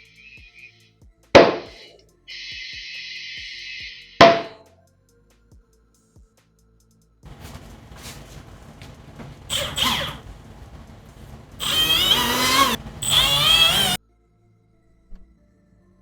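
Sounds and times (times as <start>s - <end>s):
power tool whining: 7.3s - 14.0s.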